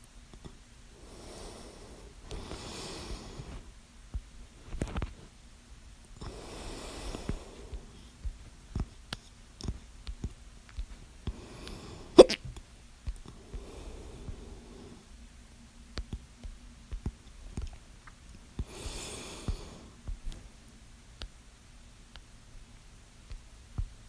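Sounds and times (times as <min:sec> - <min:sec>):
person breathing heavily: 0:01.0 - 0:03.7, 0:06.2 - 0:08.3, 0:11.3 - 0:12.2, 0:13.4 - 0:15.1, 0:18.6 - 0:20.1
person hiccuping: 0:12.2 - 0:12.4.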